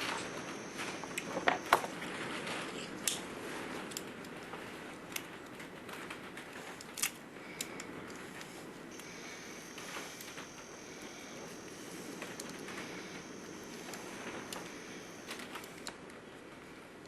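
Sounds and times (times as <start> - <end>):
wind and rain on roof: 0.0 - 17.0.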